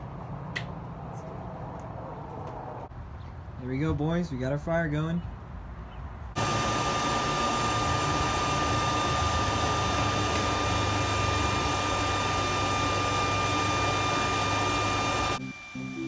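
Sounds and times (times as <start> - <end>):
blow dryer running: 6.4 - 16.0
high motor whine: 6.4 - 16.0.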